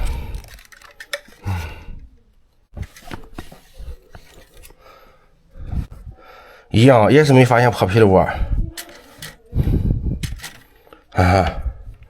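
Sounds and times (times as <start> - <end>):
cable scraping in conduit: 8.7 - 9.5.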